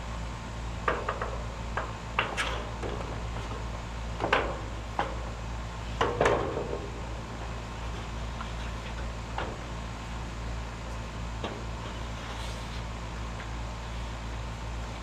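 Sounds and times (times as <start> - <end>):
steady low hum: 0.0 - 15.0
sharp knocks and clanks: 0.8 - 3.6, 4.2 - 5.2, 6.0 - 6.9.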